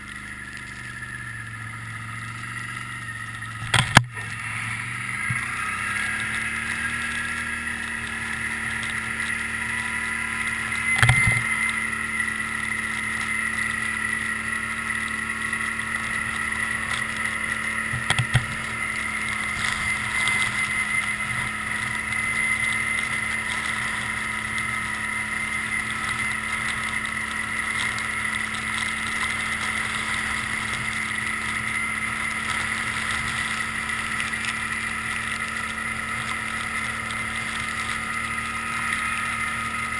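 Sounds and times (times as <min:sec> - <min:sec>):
atv engine running: 0:00.0 - 0:39.9.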